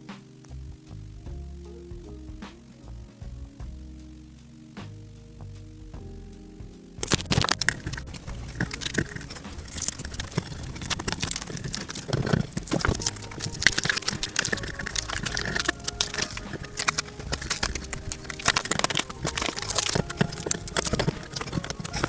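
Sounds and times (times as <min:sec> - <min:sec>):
grip tape peeling and scraping: 0:07.0 - 0:22.0.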